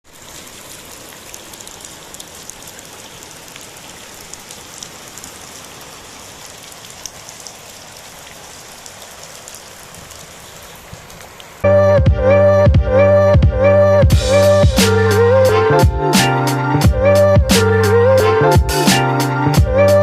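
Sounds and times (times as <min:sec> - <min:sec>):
raindrops ticking on surfaces: 0:00.0 - 0:11.7
steady rain falling: 0:00.0 - 0:11.7, 0:14.1 - 0:20.0.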